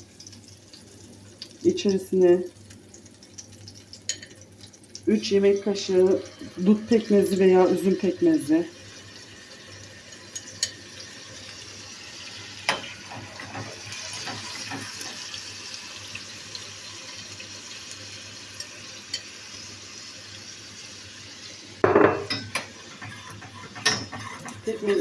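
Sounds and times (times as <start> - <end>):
metal spoon clattering against pan: 21.9 - 24.9.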